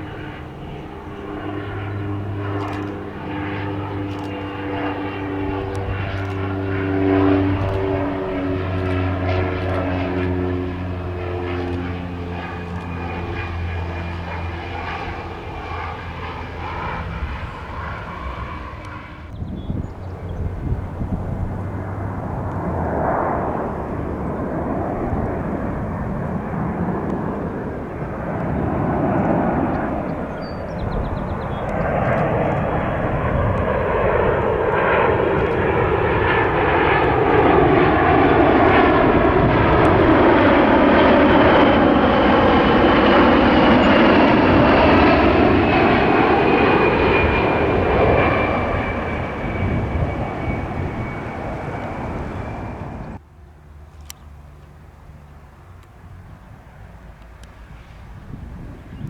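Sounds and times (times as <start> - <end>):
aircraft engine passing by: 0.0 - 59.0.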